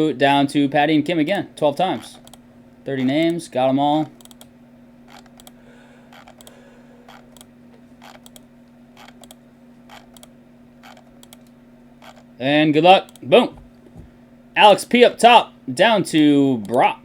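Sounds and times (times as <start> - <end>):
steady low hum: 0.0 - 17.0
computer mouse clicks: 2.2 - 2.4, 4.2 - 4.5, 5.1 - 8.4, 9.0 - 12.2.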